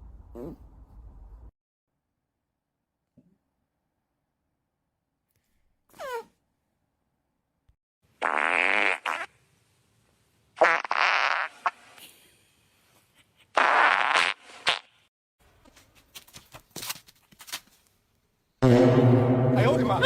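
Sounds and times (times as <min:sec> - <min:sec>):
loud fart sounds: 0:05.9 - 0:06.4, 0:08.2 - 0:09.4, 0:10.6 - 0:12.0, 0:13.5 - 0:15.0.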